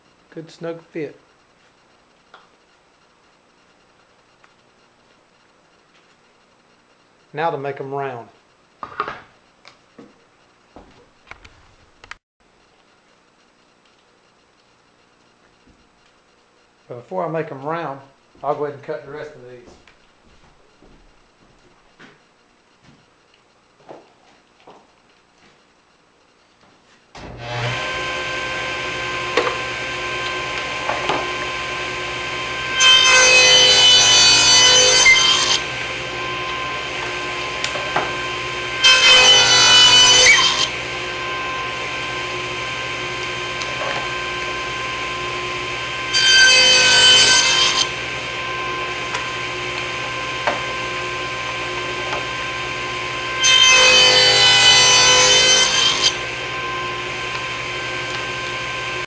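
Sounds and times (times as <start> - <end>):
table saw cutting wood: 27.2 - 59.0.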